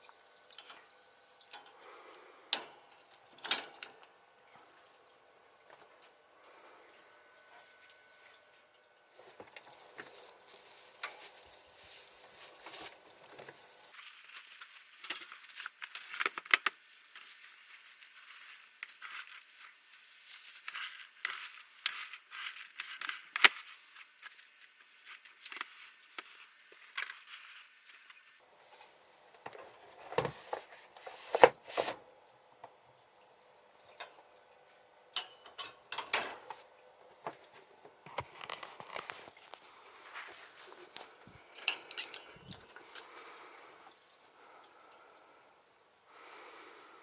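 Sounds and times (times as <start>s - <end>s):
fur and clothing rustling: 9.2s - 32.0s, 37.4s - 41.5s
sharp crackles: 9.8s - 28.4s.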